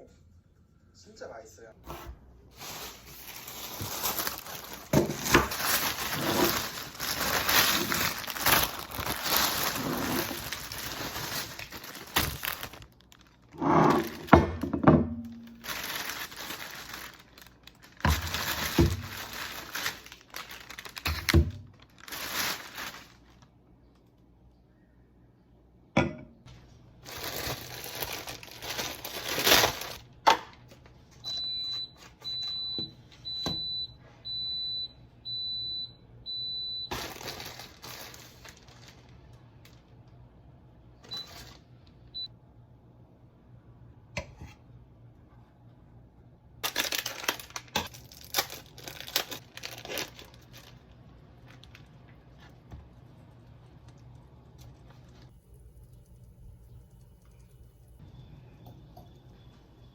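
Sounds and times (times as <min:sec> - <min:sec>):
crinkling and rustling: 0:01.9 - 0:24.2, 0:26.5 - 0:33.4, 0:36.8 - 0:40.2, 0:41.0 - 0:42.0, 0:46.6 - 0:56.2
electronic appliance beeping: 0:31.2 - 0:37.1, 0:41.0 - 0:41.4, 0:42.1 - 0:42.3.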